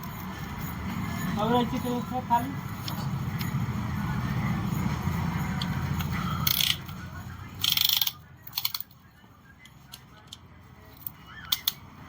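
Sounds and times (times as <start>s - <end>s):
metallic clicking and clinking: 4.7s - 9.0s, 9.6s - 11.9s.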